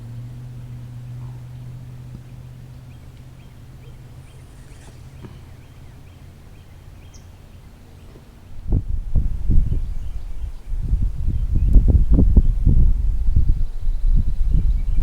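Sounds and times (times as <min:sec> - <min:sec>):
bird chirping faintly: 0:00.0 - 0:08.4
low steady hum: 0:00.0 - 0:15.0.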